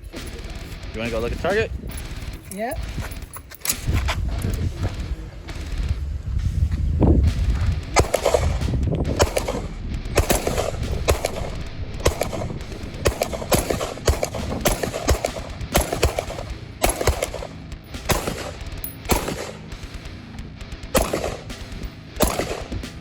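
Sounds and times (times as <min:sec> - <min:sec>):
sharp gunshots: 0:00.0 - 0:06.1, 0:07.1 - 0:23.0.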